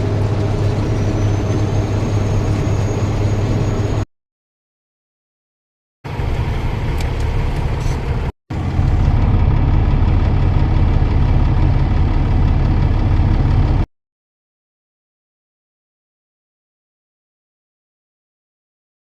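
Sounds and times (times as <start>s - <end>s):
engine rumbling: 0.0s - 4.1s, 6.0s - 13.9s.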